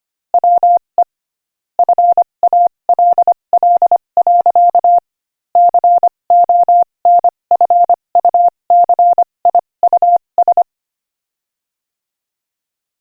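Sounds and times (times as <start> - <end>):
morse code beeps: 0.4 - 0.8, 1.8 - 5.0, 5.6 - 10.7.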